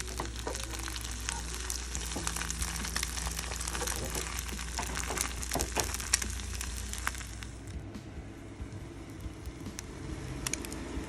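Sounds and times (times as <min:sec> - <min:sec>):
food sizzling in a frying pan: 0:00.0 - 0:07.8.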